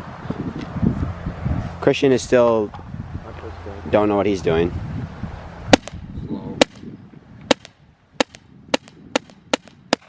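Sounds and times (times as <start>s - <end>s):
paintball marker shots: 5.7s - 6.0s, 7.5s - 10.0s.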